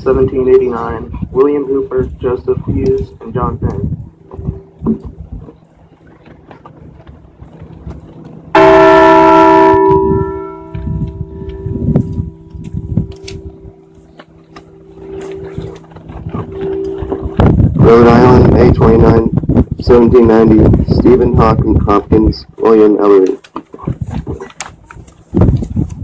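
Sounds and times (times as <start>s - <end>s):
large bell ringing: 8.4s - 20.6s.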